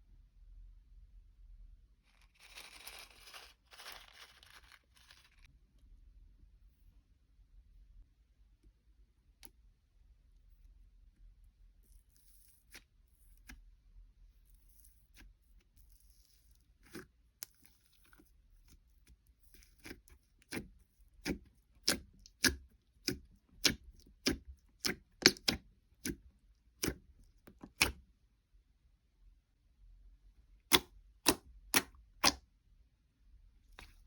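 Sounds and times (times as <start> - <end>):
slime squished by hand: 19.4 - 28.0, 30.7 - 32.4
sharp popping clicks of slime: 30.7 - 32.4.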